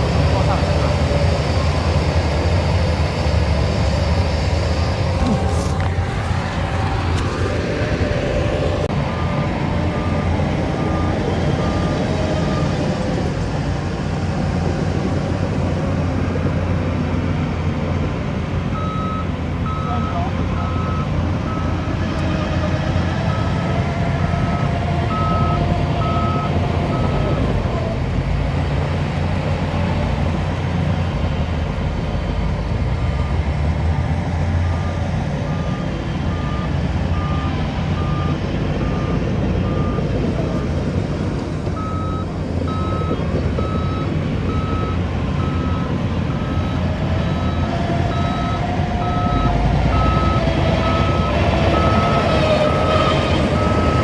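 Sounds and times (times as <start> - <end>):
diesel engines rumbling: 0.0 - 54.0
reversing alarm beeping: 24.3 - 27.5, 34.7 - 40.8, 41.8 - 54.0.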